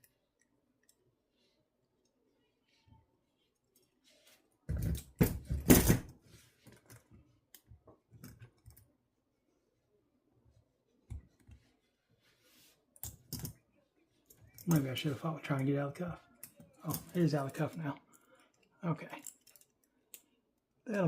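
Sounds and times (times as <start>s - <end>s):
handcuff metal clicks and rattles: 16.4s - 20.3s.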